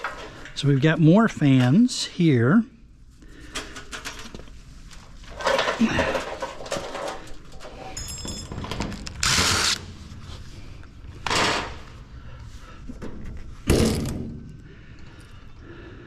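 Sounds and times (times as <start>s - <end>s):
metal parts scraping and clattering: 5.2s - 9.8s.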